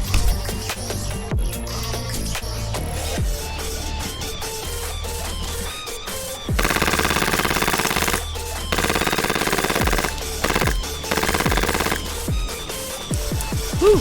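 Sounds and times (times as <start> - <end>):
rapid buzzing pulses: 6.5 - 13.6.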